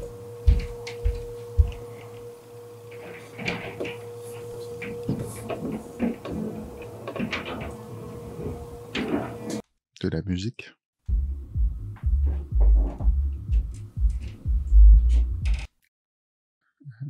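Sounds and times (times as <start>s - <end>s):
steady hum: 0.0s - 9.6s, 11.1s - 15.7s
knocks and clatter: 4.8s - 7.8s
heavy low thuds: 11.1s - 15.7s.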